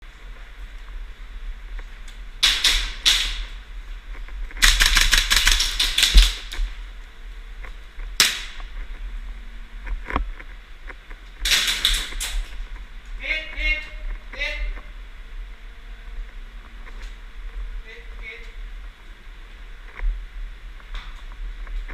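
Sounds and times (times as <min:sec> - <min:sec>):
airsoft guns firing: 0:02.4 - 0:03.6, 0:04.6 - 0:06.7, 0:08.2 - 0:08.6.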